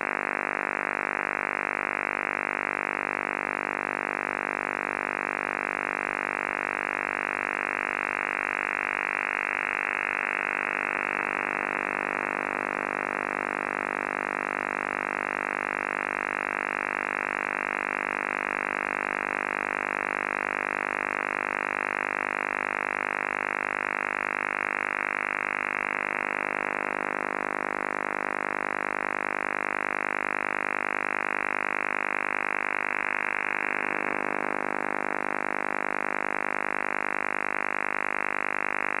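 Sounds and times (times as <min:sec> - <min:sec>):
buzzing radio signal drone: 0:22.5 - 0:39.0.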